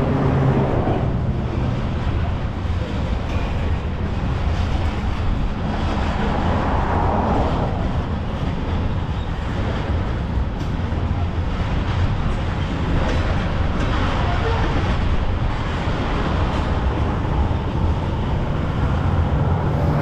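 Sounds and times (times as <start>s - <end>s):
train wheels rumbling on rail: 0.0s - 20.0s.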